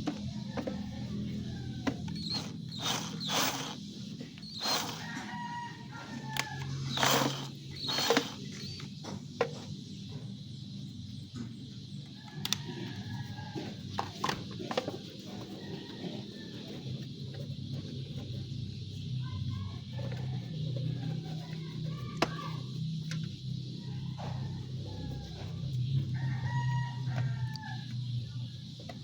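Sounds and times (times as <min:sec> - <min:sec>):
rooster crowing: 0:00.3 - 0:03.8, 0:04.6 - 0:08.4, 0:12.2 - 0:14.1, 0:15.4 - 0:17.1, 0:23.8 - 0:28.2
noisy handling sounds: 0:01.7 - 0:05.6, 0:06.2 - 0:09.7.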